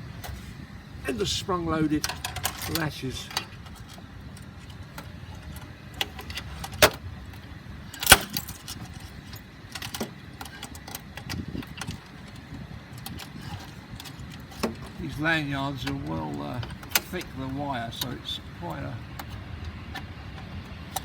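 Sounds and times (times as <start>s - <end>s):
steady low hum: 0.0s - 21.0s
latch snapping: 7.9s - 9.0s.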